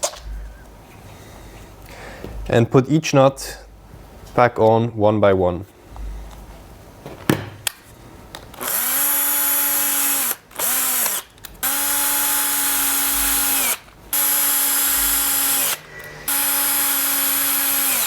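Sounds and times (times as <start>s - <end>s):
power drill whining: 8.6s - 18.0s.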